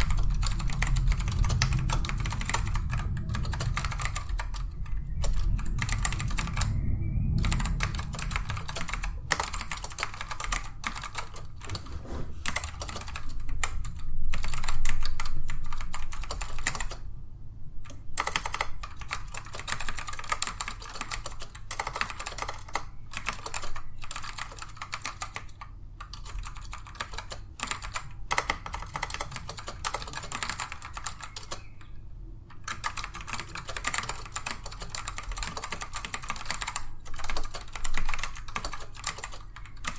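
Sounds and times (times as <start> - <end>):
fast typing on mechanical keyboard: 0.0 - 17.1, 17.9 - 31.8, 32.5 - 39.9.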